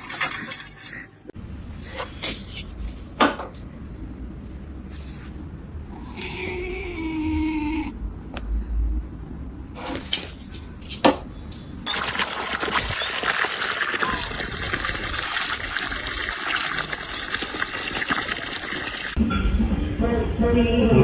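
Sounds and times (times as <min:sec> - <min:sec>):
water running: 0:11.8 - 0:19.2.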